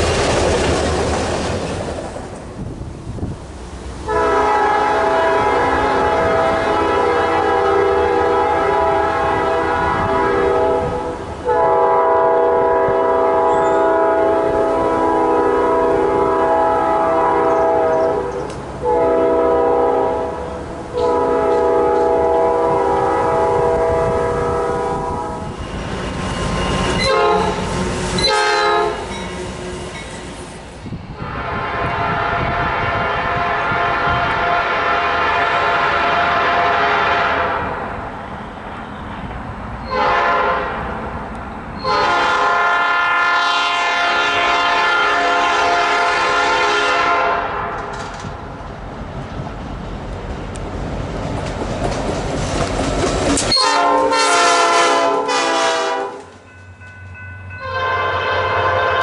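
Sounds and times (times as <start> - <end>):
rail noise: 0.0 - 59.0
locomotive horn blasts: 4.0 - 25.7, 26.4 - 29.2, 31.2 - 39.2, 39.8 - 40.9, 41.8 - 48.0, 53.5 - 56.3, 57.5 - 59.0.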